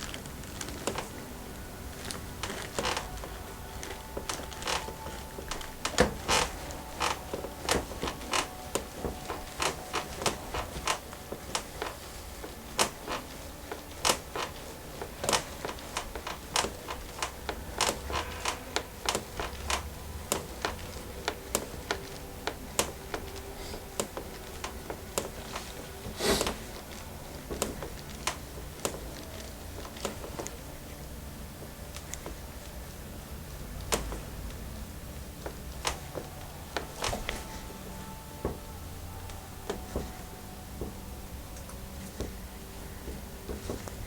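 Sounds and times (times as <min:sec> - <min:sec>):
hands massaging skin: 0:00.0 - 0:44.0.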